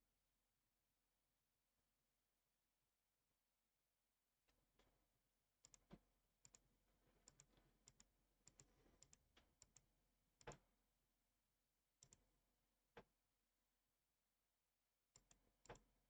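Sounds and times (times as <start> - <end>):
computer mouse clicking: 5.6 - 10.6, 12.0 - 12.3, 15.2 - 15.9.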